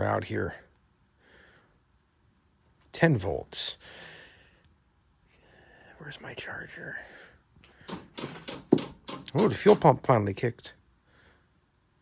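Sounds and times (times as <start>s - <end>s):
sharp clicks: 7.8s - 9.9s.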